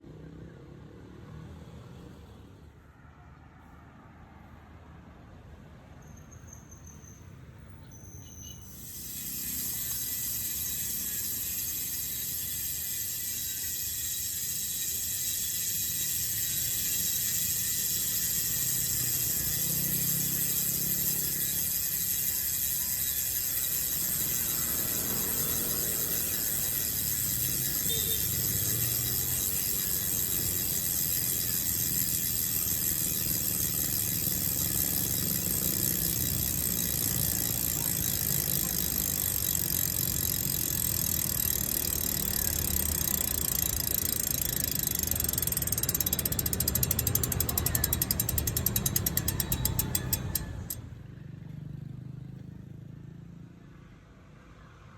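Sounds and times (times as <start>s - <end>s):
bicycle freehub ratcheting clicks: 6.0s - 51.0s.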